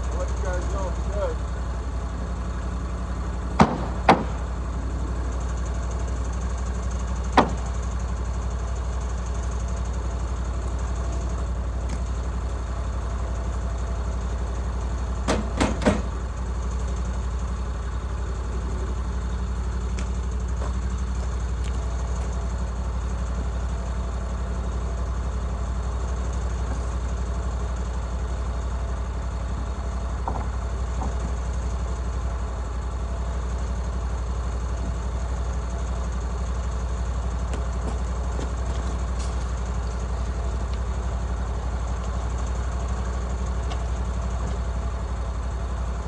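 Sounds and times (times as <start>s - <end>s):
sawmill engine idling: 0.0s - 46.0s
sharp knocks: 3.6s - 4.5s, 7.4s - 7.7s.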